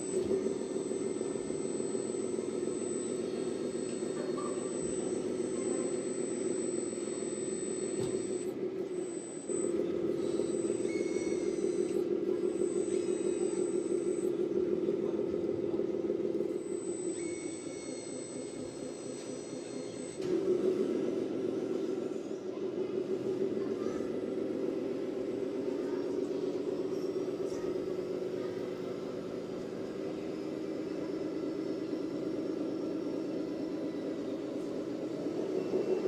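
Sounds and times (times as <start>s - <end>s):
thin high whine: 0.0s - 20.8s
model vehicle engine drone: 0.0s - 36.0s.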